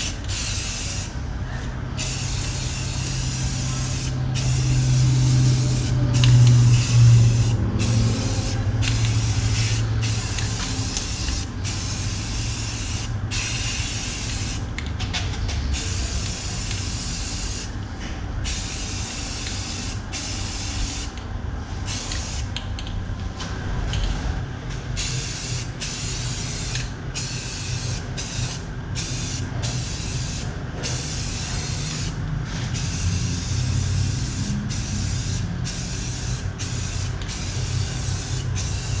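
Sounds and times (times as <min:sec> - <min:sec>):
aerosol spray hissing: 0:02.0 - 0:14.6
low hum: 0:23.1 - 0:24.9.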